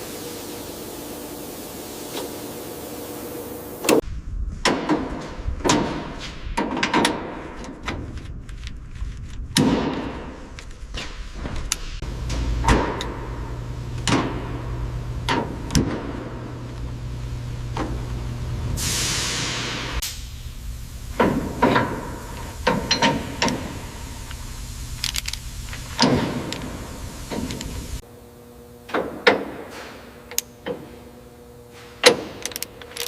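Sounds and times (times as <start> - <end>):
low hum: 7.5 - 28.9
steady hiss: 16.4 - 28.0.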